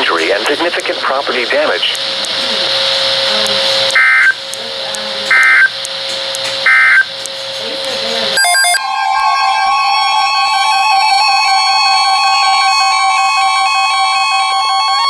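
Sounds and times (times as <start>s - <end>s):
short data bursts: 0.0s - 4.5s, 5.1s - 7.2s, 8.2s - 15.0s
radio receiver hissing: 0.0s - 8.4s
steady cluster of tones: 0.0s - 15.0s.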